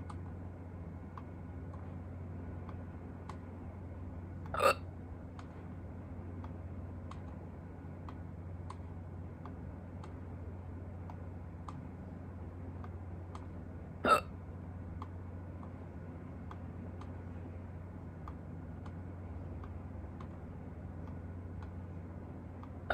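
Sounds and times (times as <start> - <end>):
low background hum: 0.0 - 22.9
person hiccuping: 4.5 - 4.8, 14.0 - 14.3.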